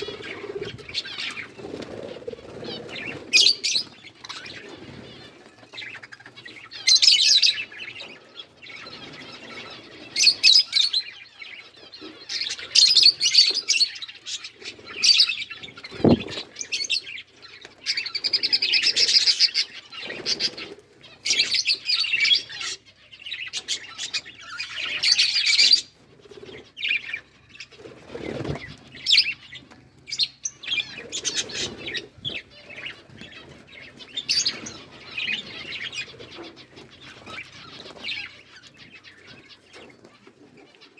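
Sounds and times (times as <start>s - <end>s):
budgies chattering and chirping: 0.0s - 40.9s
dull thumps: 16.0s - 16.4s.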